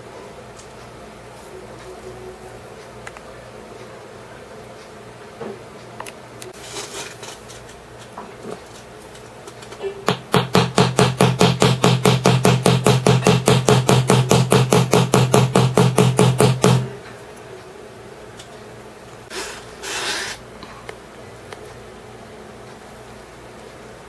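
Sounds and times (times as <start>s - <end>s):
short hisses: 19.3s - 20.4s.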